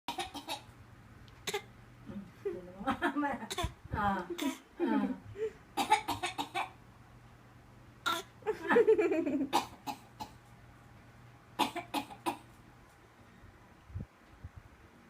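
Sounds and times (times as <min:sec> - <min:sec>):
person fake coughing: 0:05.8 - 0:06.7.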